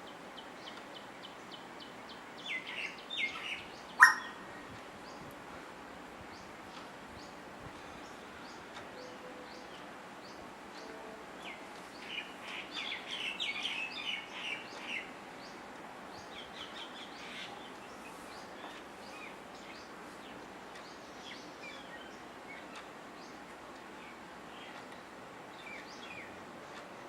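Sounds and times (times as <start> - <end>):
outdoor background noise: 0.0 - 27.0
bird calling shrill notes: 4.0 - 4.4.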